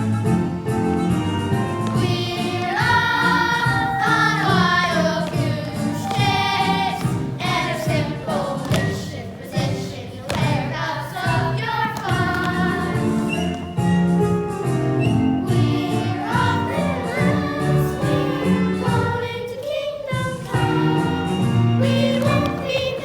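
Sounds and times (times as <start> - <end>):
instrumental accompaniment: 0.0 - 23.0
young voices singing in chorus: 1.8 - 13.5, 15.4 - 23.0.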